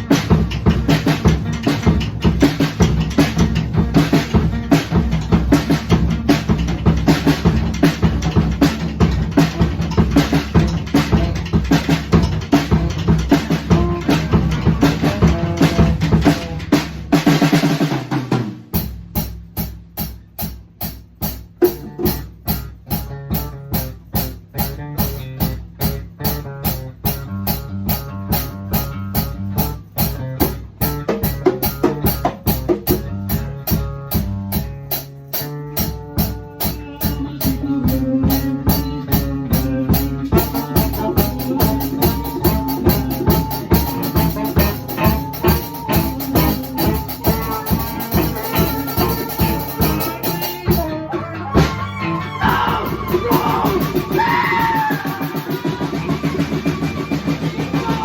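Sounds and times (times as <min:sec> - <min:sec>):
bass guitar: 0:00.0 - 0:58.0
drum kit beat: 0:00.0 - 0:58.0
live band playing: 0:00.0 - 0:58.0
held note: 0:40.4 - 0:58.0.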